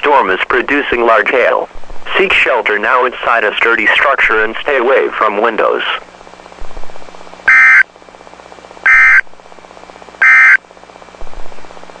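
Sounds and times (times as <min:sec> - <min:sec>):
warbling digital data tone bursts: 0:08.9 - 0:09.2.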